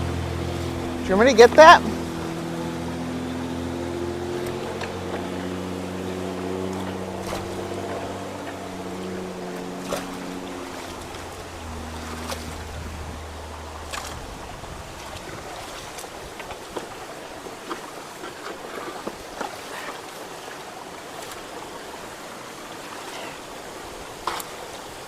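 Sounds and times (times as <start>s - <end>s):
vehicle engine humming: 0.0s - 17.6s
water rushing through culvert: 0.0s - 25.0s.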